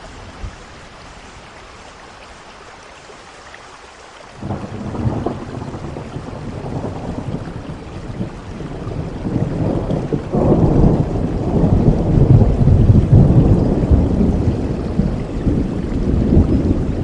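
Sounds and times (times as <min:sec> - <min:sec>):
rain falling: 0:00.0 - 0:17.0
thunder rolling: 0:04.4 - 0:17.0.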